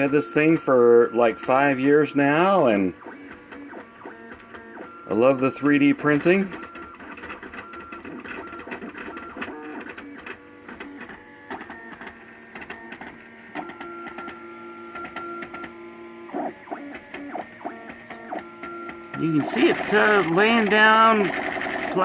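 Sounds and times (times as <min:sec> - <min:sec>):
stepper motors whining: 0:15.5 - 0:22.0.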